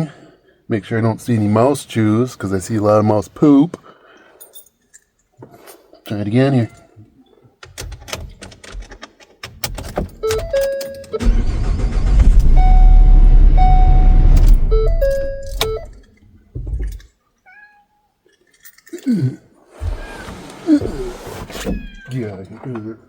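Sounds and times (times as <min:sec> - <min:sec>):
van engine cranking and running: 0:09.6 - 0:16.0
dashboard warning chimes: 0:10.2 - 0:16.1.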